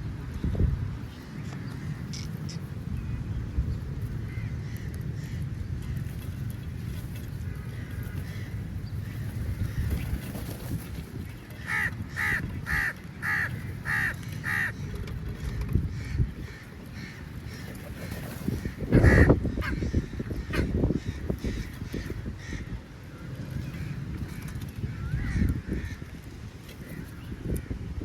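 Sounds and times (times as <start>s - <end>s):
crow cawing: 11.6s - 14.8s, 19.0s - 20.7s.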